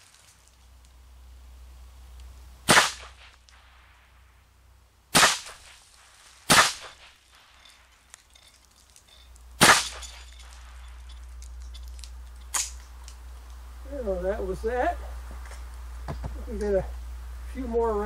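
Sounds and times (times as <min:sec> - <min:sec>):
rifle shots: 0:02.6 - 0:03.4, 0:05.1 - 0:05.8, 0:06.4 - 0:07.4, 0:09.6 - 0:10.8.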